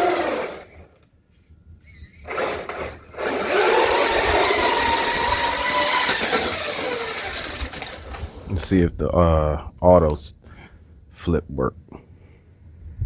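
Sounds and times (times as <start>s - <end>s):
electric motor whining: 0.0s - 0.9s, 1.8s - 8.5s
tyres spinning on ice: 0.0s - 1.0s, 1.8s - 8.6s.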